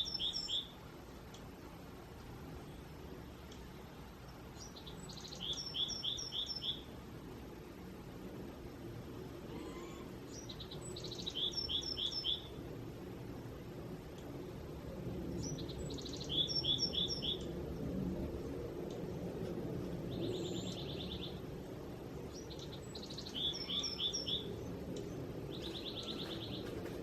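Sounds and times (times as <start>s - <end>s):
songbird singing: 0.0s - 1.5s, 2.5s - 7.0s, 9.4s - 13.6s, 15.0s - 27.0s
low background rumble: 6.7s - 27.0s.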